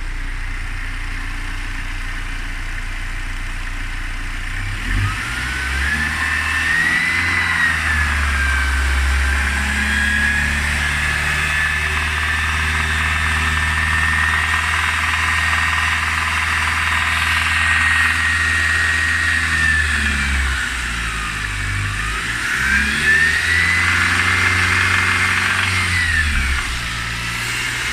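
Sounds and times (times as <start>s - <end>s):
high engine whine: 0.0s - 27.9s
car engine revving: 4.5s - 27.9s.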